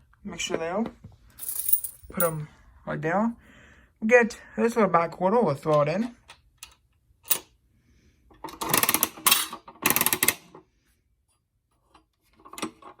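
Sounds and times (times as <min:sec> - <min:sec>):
crank ratcheting clicks: 0:09.8 - 0:10.4.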